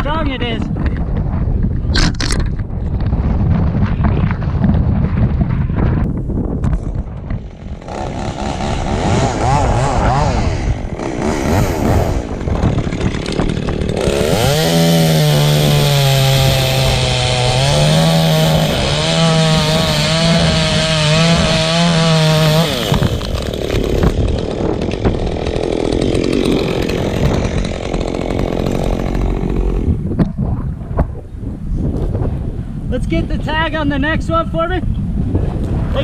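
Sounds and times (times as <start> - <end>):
chainsaw cutting: 7.2 - 30.1.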